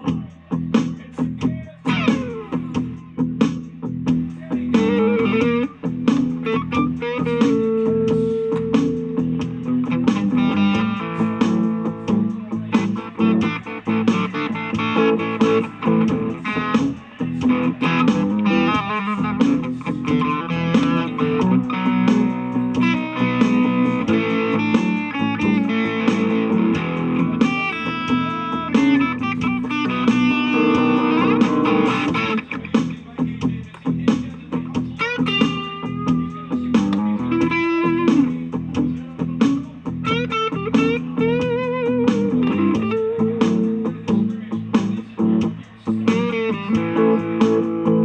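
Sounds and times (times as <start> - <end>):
electric guitar blues lines: 0.0 - 48.0.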